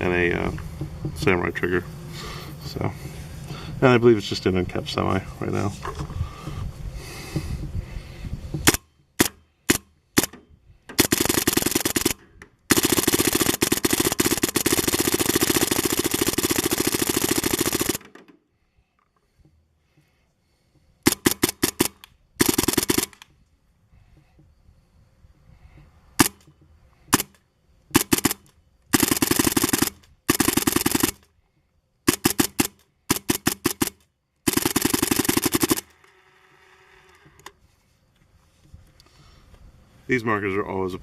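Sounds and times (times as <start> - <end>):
paintball marker firing: 8.6 - 18.3, 21.0 - 23.3, 26.2 - 26.5, 27.1 - 31.3, 32.1 - 36.0.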